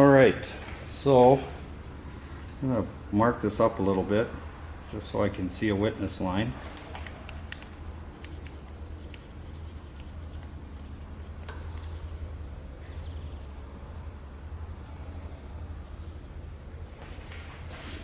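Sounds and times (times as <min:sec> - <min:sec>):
low hum: 0:00.0 - 0:18.0
marker scribbling on metal: 0:02.1 - 0:06.2, 0:08.1 - 0:11.4, 0:12.8 - 0:17.0.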